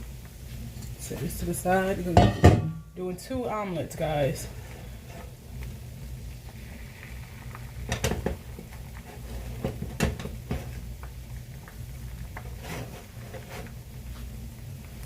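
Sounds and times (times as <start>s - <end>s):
steady low hum: 0.0s - 15.0s
dishes and utensils clinking: 2.2s - 2.8s.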